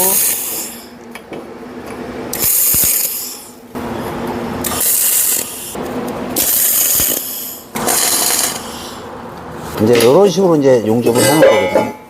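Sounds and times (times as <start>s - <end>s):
welding arc crackle and hiss: 0.0s - 0.9s, 2.3s - 3.6s, 4.6s - 5.8s, 6.4s - 8.7s.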